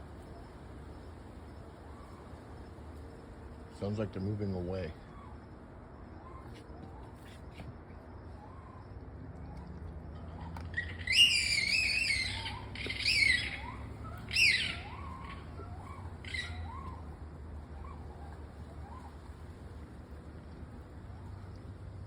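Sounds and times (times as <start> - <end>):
harsh animal screams: 10.4 - 17.0
short rising whistles: 10.7 - 15.3.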